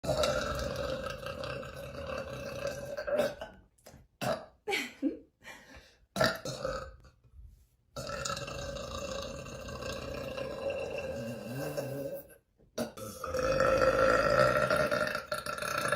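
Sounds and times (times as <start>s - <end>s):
woman burping: 0.0s - 3.6s, 4.2s - 5.1s.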